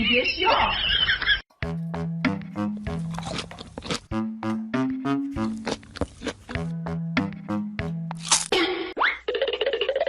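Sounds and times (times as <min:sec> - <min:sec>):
upbeat instrumental synth music: 0:06.6 - 0:08.2.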